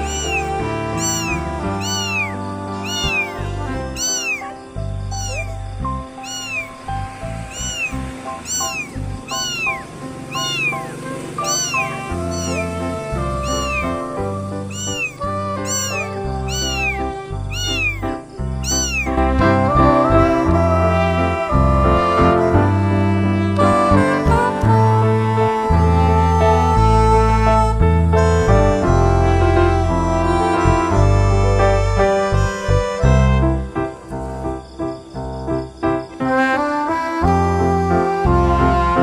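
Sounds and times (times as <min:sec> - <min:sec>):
kitten mewing: 0:00.0 - 0:22.3
background music: 0:00.0 - 0:39.0.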